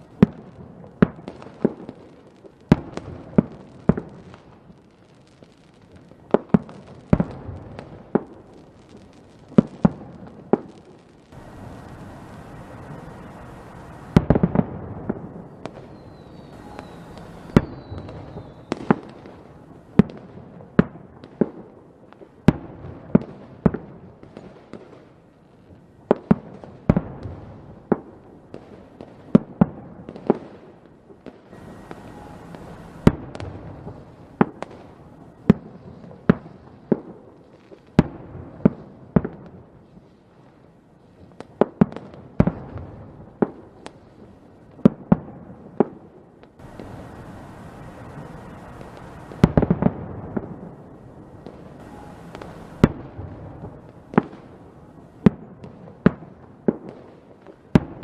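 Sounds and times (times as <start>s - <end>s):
fireworks bangs: 0.0s - 25.1s, 26.1s - 40.3s, 41.1s - 58.0s
fireworks crackling and rumble: 0.0s - 58.0s
faint falling whistle: 15.8s - 18.8s, 31.6s - 32.8s, 51.8s - 52.6s.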